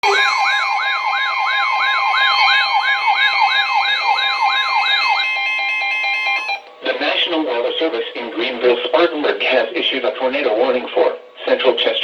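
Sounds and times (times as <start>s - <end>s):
steady alert tone: 0.0s - 6.6s
wailing siren: 0.0s - 6.7s.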